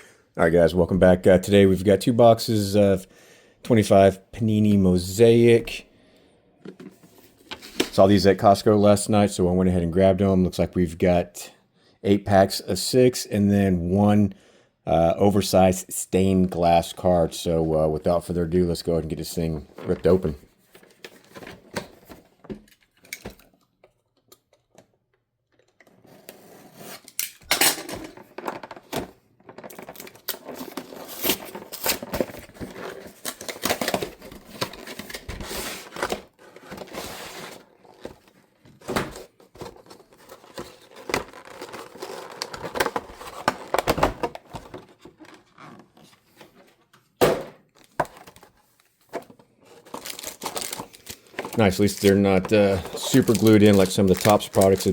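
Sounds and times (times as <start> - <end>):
plastic wrapping rustling and crinkling: 29.5 - 46.8, 47.7 - 54.9
cardboard box tearing: 49.9 - 51.2.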